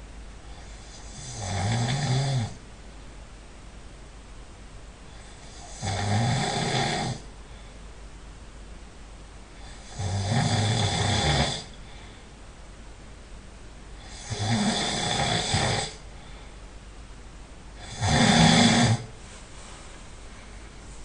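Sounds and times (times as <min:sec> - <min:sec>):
quiet breathing: 0:00.0 - 0:01.2, 0:05.0 - 0:05.8, 0:06.7 - 0:08.0, 0:09.4 - 0:10.0, 0:11.0 - 0:12.6, 0:13.9 - 0:16.8, 0:17.7 - 0:21.0
person snoring loudly: 0:00.5 - 0:02.6, 0:05.1 - 0:07.2, 0:09.6 - 0:11.8, 0:14.0 - 0:16.0, 0:17.8 - 0:19.1.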